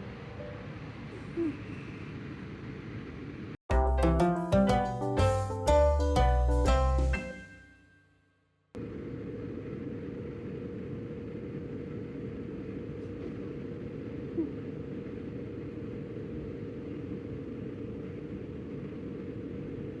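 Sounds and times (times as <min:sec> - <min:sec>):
steady hiss with faint hum: 0:00.0 - 0:03.6, 0:08.8 - 0:20.0.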